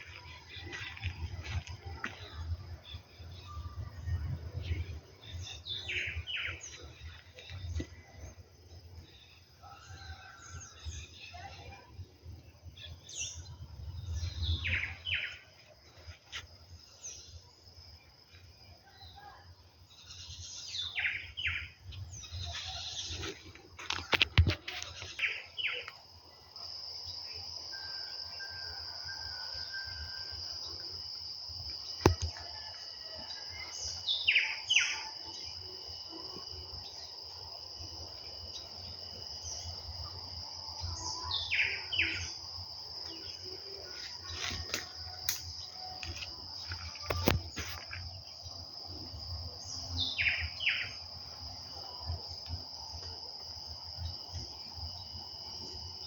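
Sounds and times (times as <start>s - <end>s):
high-pitched insect drone: 19.9s - 56.0s.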